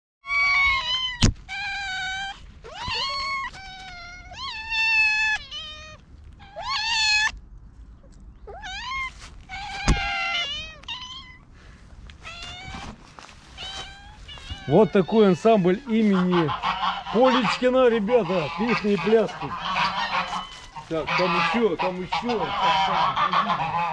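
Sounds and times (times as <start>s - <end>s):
cats meowing: 0.2s - 7.4s, 8.0s - 23.9s.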